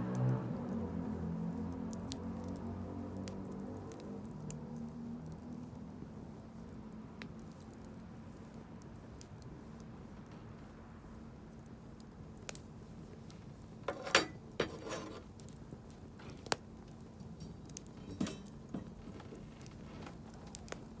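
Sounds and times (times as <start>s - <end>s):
wood campfire crackling: 0.0s - 21.0s.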